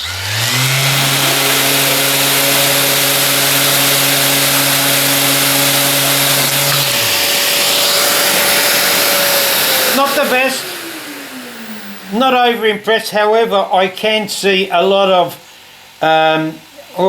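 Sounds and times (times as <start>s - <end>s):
handheld power tool spinning: 0.0s - 12.7s
loud rushing hiss: 0.0s - 13.6s.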